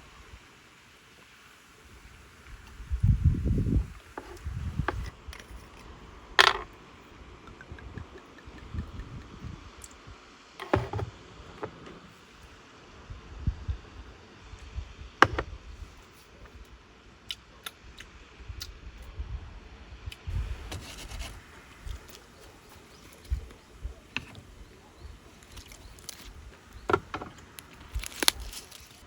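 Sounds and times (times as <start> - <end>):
rubbing and scraping: 4.0 - 6.8, 20.3 - 29.0
sharp clicks and knocks: 7.4 - 10.0.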